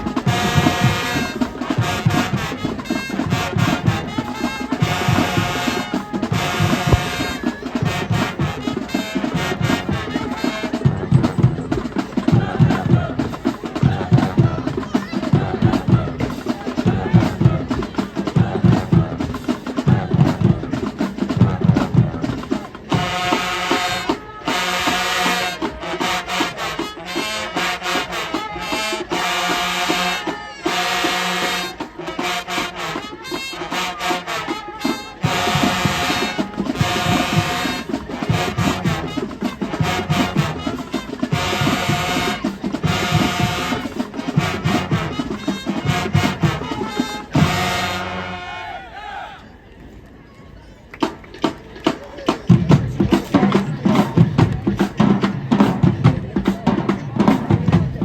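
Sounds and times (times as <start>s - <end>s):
bass drums: 0.0s - 8.8s, 9.4s - 22.4s, 52.5s - 58.0s
brass chords: 0.0s - 49.2s.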